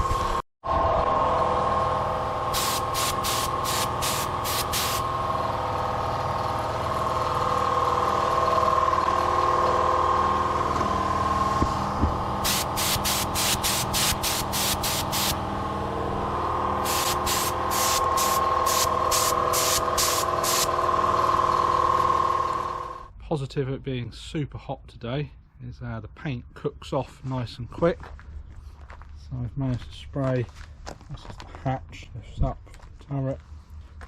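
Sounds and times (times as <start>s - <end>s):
compressor humming: 0.0s - 23.1s
spray gun hissing: 2.5s - 5.1s, 12.4s - 15.4s, 16.8s - 20.7s.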